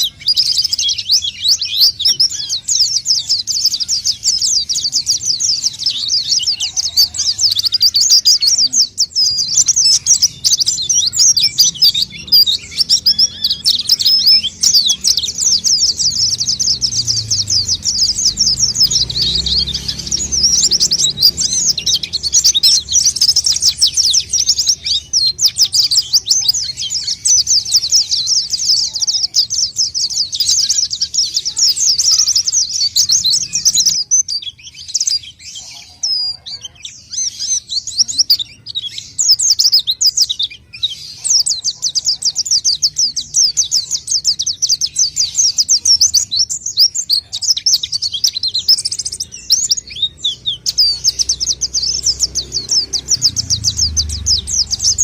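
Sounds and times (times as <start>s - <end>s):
white-eye bird twittering song: 0.0s - 55.0s.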